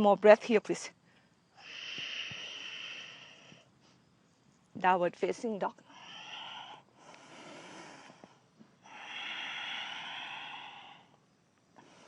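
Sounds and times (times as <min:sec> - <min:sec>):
woman breathing audibly: 0:01.0 - 0:04.1, 0:05.8 - 0:12.0.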